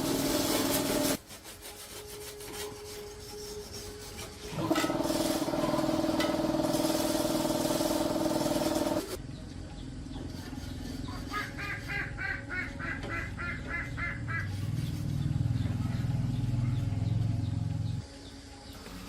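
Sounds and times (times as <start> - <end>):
motor humming: 4.5 - 9.2
faint rhythmic chirping: 9.2 - 19.0.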